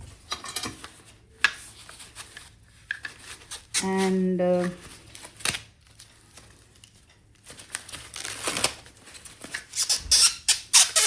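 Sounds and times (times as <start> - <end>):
packaging crinkling and rustling: 0.8 - 10.3
packaging tearing: 7.5 - 11.0.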